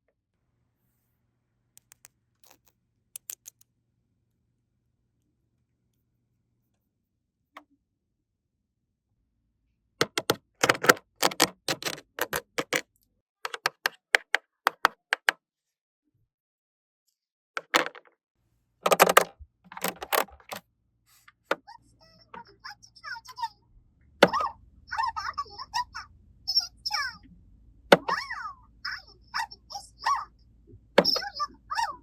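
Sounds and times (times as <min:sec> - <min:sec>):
plastic toy pieces clicking: 0:01.8 - 0:03.6, 0:10.0 - 0:12.8, 0:13.5 - 0:15.4, 0:17.6 - 0:18.0, 0:18.9 - 0:20.6.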